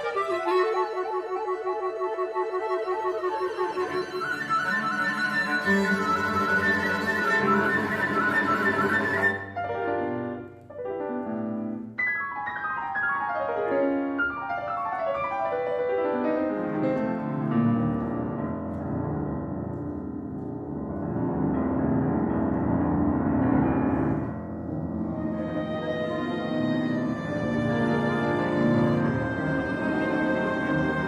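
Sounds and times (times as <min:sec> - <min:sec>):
solo piano playing: 0:06.8 - 0:31.0.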